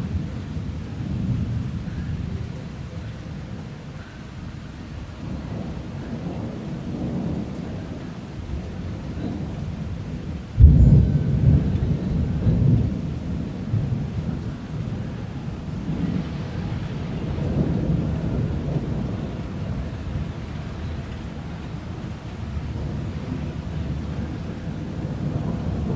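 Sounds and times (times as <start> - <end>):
rain falling: 0.0 - 25.9
thunder rumbling: 0.0 - 25.9
loud thunderclap: 5.2 - 15.0, 15.6 - 20.5, 21.8 - 25.9.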